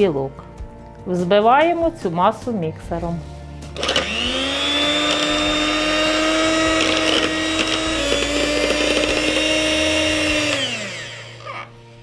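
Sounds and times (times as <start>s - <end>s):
mixer beaters rattling: 3.8s - 11.6s
electric mixer running: 3.8s - 11.7s.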